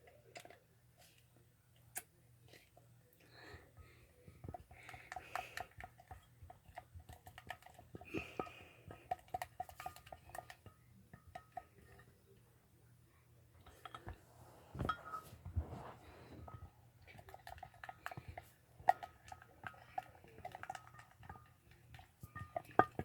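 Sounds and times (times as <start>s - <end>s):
spoon tapping against bowl: 14.8s - 15.3s, 16.5s - 23.0s.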